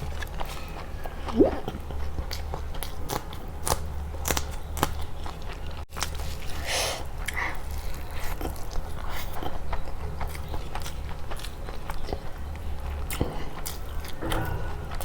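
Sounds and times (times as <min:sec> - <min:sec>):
biting and chewing: 0:00.0 - 0:15.0.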